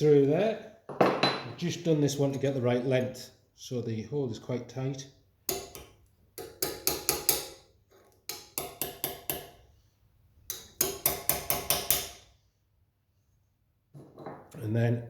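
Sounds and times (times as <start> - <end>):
hammer tapping metal rod: 5.5 - 7.6, 8.3 - 9.6, 10.5 - 12.2.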